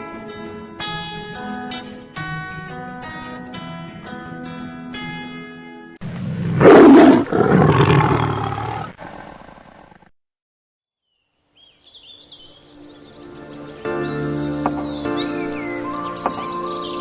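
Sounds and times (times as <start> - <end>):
plucked string music: 0.0 - 6.0, 13.2 - 17.0
lion roaring: 6.0 - 10.0
high bird chirps: 11.0 - 17.0.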